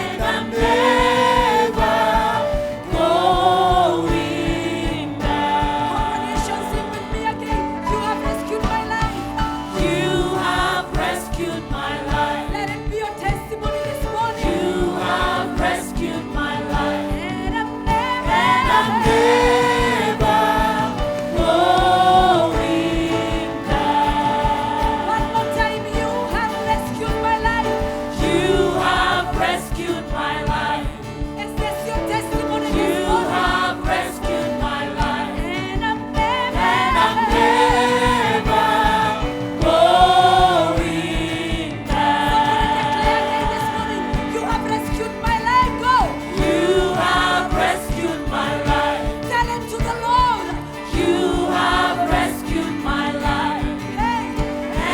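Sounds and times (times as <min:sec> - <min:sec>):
band accompaniment: 0:00.0 - 0:54.9
congregation singing: 0:00.0 - 0:54.9.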